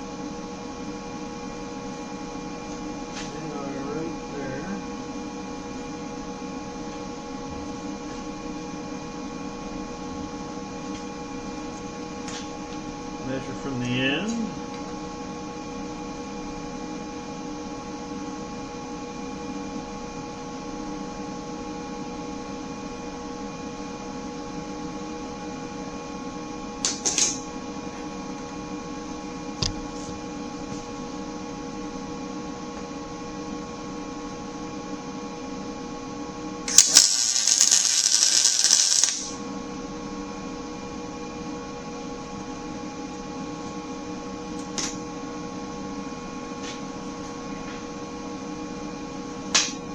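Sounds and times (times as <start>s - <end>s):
shop equipment electrical hum: 0.0s - 49.9s
loud harsh hiss: 36.7s - 39.4s.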